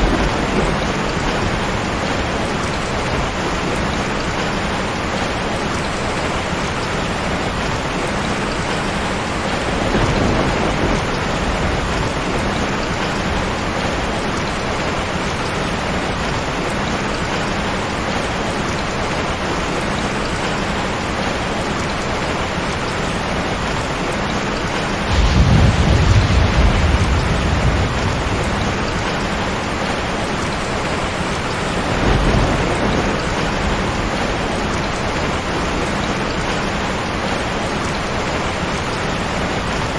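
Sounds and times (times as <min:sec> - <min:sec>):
thunder rumbling: 0:00.0 - 0:06.6, 0:09.5 - 0:15.2, 0:24.6 - 0:39.8
heavy rain pouring: 0:00.0 - 0:39.9.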